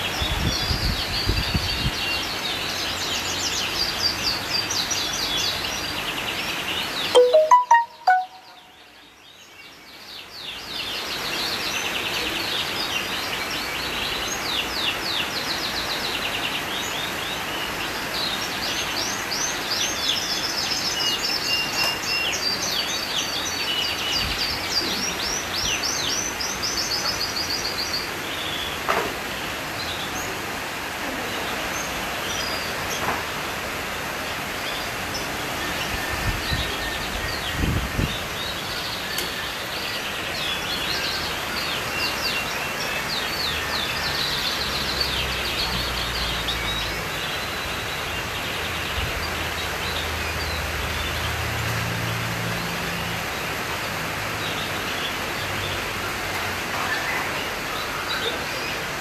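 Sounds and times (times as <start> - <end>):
steady outdoor hiss: 0.0 - 59.0
songbird chirping: 1.2 - 28.8.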